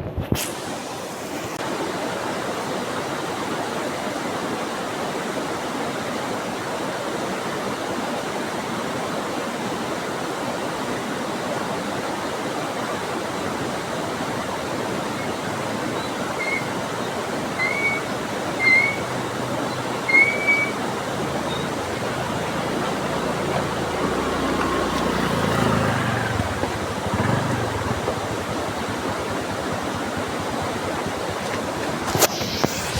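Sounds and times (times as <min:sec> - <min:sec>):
flowing water rushing: 0:00.4 - 0:32.9
short high chirps: 0:16.0 - 0:20.8.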